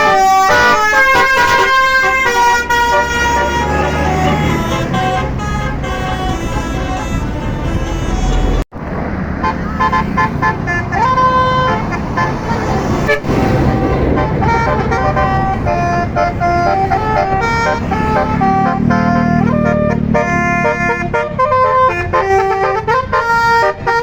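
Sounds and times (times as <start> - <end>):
musical bus horn tune: 0.0 - 8.6, 9.4 - 24.0.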